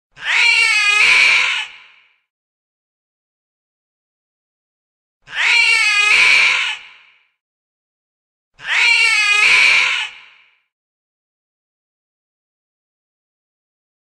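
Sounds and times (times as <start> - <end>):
cat screaming: 0.2 - 2.0, 5.3 - 7.1, 8.6 - 10.5.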